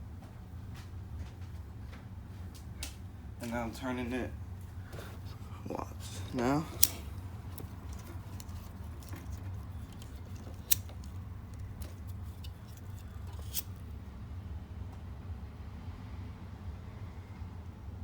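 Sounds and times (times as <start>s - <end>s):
steady low hum: 0.0s - 14.4s
small clicks from handling wiring: 6.2s - 13.8s.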